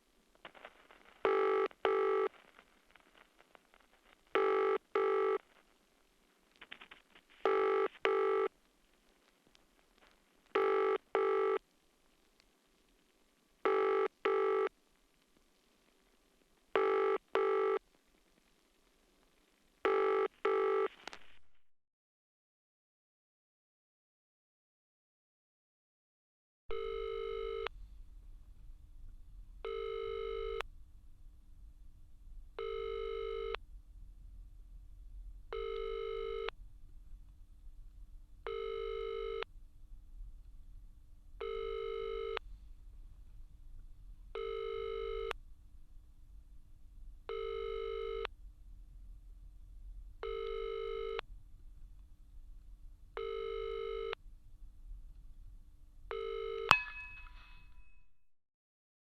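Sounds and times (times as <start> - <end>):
telephone ringback tone: 7.5 - 8.5, 13.7 - 14.7, 26.7 - 27.7, 29.7 - 30.6, 32.6 - 33.6, 35.6 - 36.5, 47.3 - 48.3, 53.2 - 54.2
low line hum: 30.6 - 35.7.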